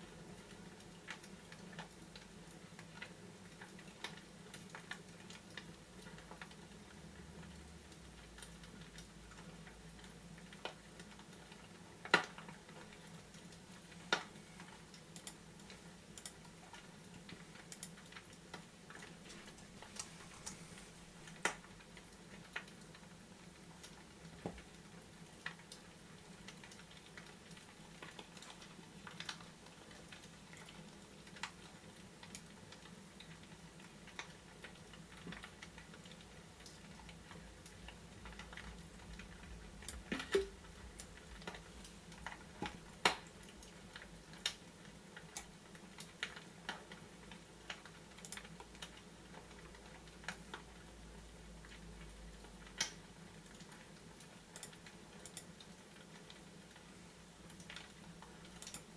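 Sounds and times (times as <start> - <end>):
fireplace fire crackling: 0.0 - 58.9.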